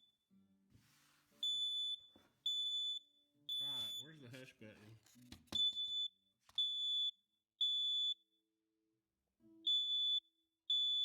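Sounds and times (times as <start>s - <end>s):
smoke alarm high-pitched beeps: 1.4s - 4.1s, 5.6s - 8.2s, 9.6s - 11.0s.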